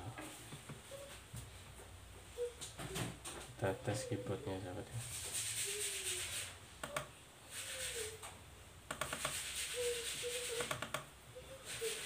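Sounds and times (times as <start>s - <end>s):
laptop keys clicking: 8.9s - 9.3s, 10.6s - 11.1s.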